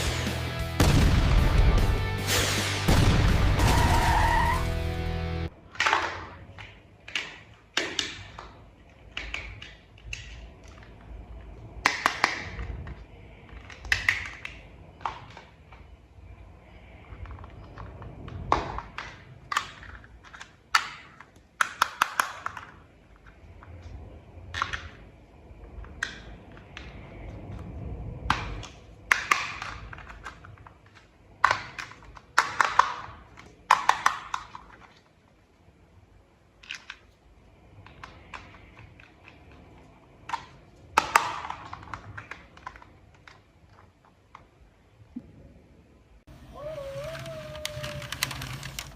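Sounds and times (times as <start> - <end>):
plastic toy parts clicking: 5.6 - 11.0, 11.8 - 15.8, 17.1 - 23.4, 28.3 - 35.2, 36.6 - 37.2, 40.2 - 44.6, 47.0 - 48.9.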